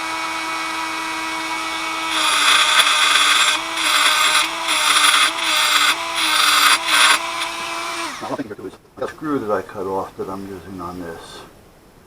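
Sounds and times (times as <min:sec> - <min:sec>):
rotary tool grinding metal: 0:00.0 - 0:08.4.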